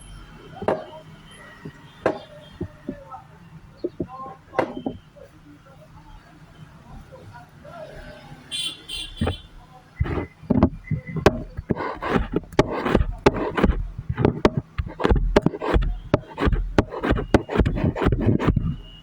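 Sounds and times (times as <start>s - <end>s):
rapid sharp knocks and clacks: 10.0s - 18.8s.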